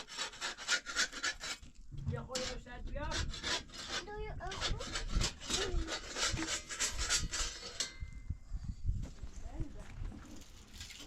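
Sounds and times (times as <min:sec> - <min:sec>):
rasping scraping strokes: 0:00.0 - 0:08.2.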